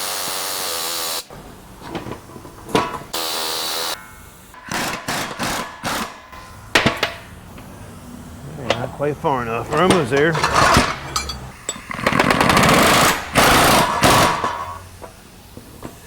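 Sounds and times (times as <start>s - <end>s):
power tool driving a screw: 0.0s - 1.3s, 11.9s - 14.8s.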